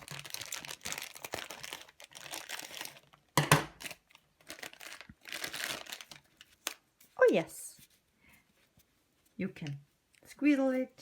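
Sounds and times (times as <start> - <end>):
plastic wrapper crinkling and tearing: 0.0 - 7.2.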